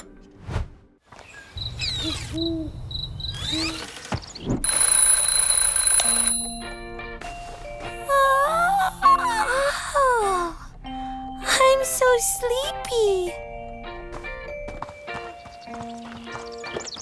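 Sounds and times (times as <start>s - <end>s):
alarm clock ringing: 4.6s - 7.1s.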